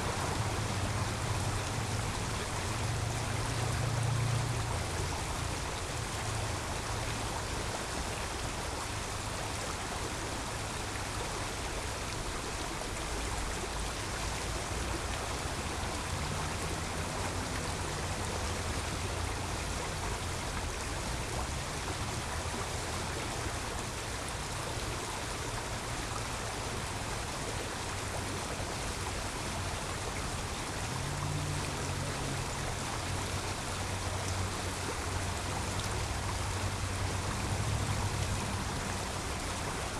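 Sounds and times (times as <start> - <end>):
road traffic rumble: 0.0 - 7.5, 13.0 - 24.3, 27.4 - 39.9
creek water flowing: 0.0 - 39.9.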